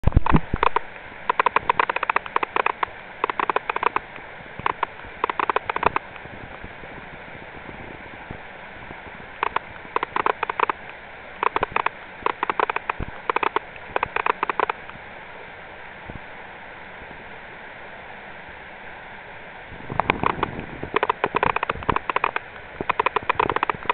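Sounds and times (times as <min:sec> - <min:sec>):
sharp rapid clicks: 0:00.0 - 0:06.1, 0:09.4 - 0:14.8, 0:19.9 - 0:23.9
stream flowing: 0:00.0 - 0:23.9.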